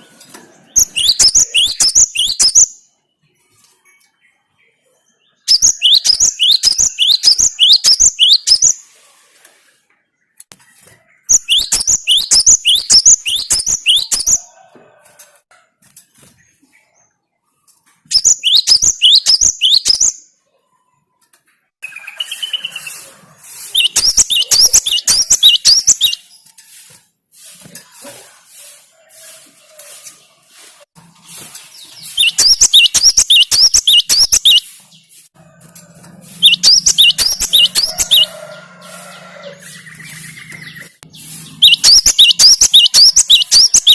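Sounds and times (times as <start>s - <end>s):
bird whistling song: 0.6s - 2.9s, 5.2s - 8.8s, 11.3s - 14.5s, 18.1s - 20.3s, 21.8s - 26.4s, 31.8s - 34.8s, 36.4s - 38.3s, 39.5s - 43.9s.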